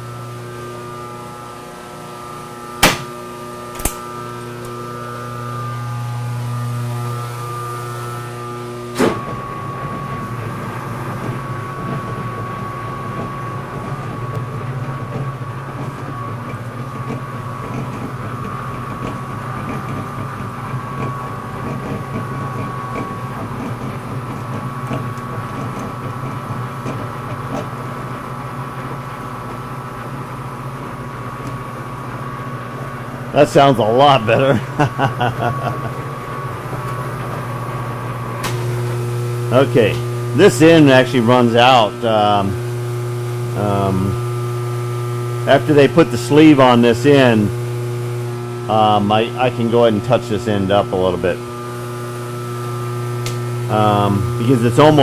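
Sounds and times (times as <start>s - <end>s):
metal lathe running: 0.0s - 55.0s
sharp click: 2.8s - 3.2s, 3.8s - 4.0s
faint high whine: 28.9s - 55.0s
man talking: 33.4s - 34.7s, 39.5s - 42.6s, 43.6s - 44.2s, 45.5s - 47.6s, 48.7s - 51.4s, 53.7s - 55.0s.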